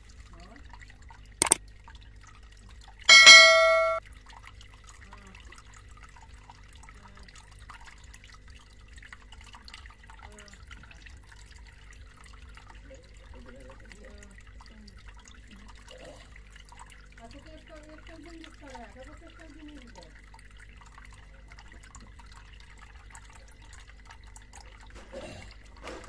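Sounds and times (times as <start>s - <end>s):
water trickling and dripping: 0.0s - 26.0s
bright ringing tone: 3.1s - 4.0s.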